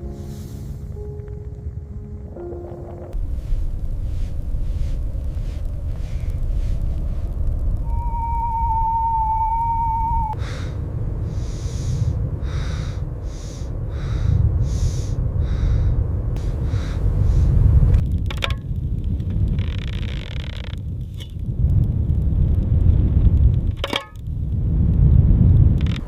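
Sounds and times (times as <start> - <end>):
steady low rumble: 0.0 - 26.0
held wavering tone: 7.8 - 10.4
short breathy hisses: 10.4 - 17.5.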